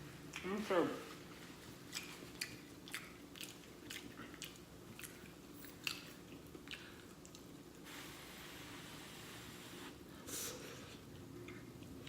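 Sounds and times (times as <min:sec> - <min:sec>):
person chewing with wet smacks: 0:00.2 - 0:07.8, 0:11.2 - 0:12.0.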